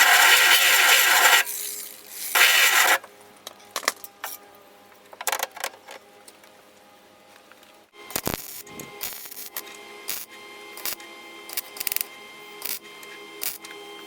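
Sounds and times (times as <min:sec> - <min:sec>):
welding arc crackling: 0:00.0 - 0:03.0, 0:08.1 - 0:10.2.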